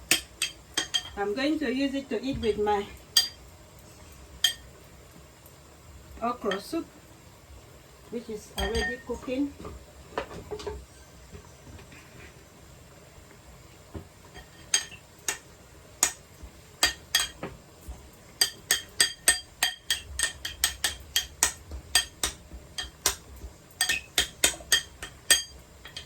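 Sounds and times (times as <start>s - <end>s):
cutlery clinking against dishes: 0.1s - 1.2s, 3.2s - 3.4s, 8.6s - 9.1s, 14.3s - 16.2s, 16.8s - 17.4s, 18.4s - 23.2s, 23.8s - 26.0s.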